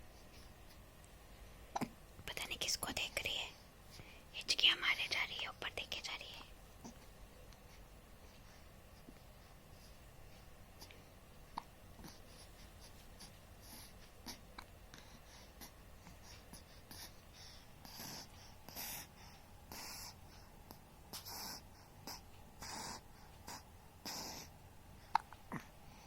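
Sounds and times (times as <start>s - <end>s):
baby breathing noisily: 12.0s - 26.0s.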